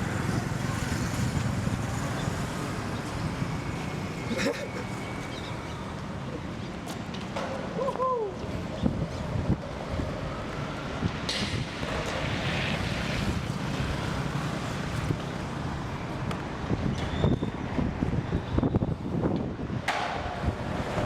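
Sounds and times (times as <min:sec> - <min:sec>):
wind buffeting microphone: 0:08.4 - 0:21.0.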